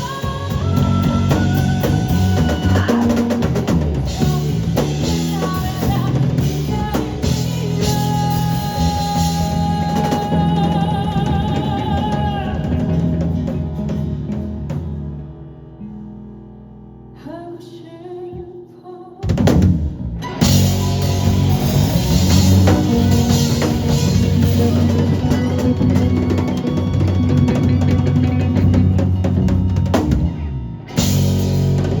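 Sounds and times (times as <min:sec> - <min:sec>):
live rock band playing: 0:00.0 - 0:15.5, 0:19.3 - 0:32.0
drum hit: 0:19.3 - 0:30.2.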